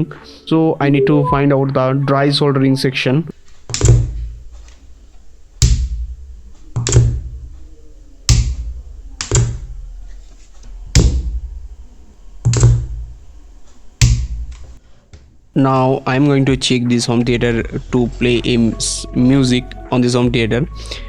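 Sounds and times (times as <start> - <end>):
sharp thumps: 3.3 - 15.5.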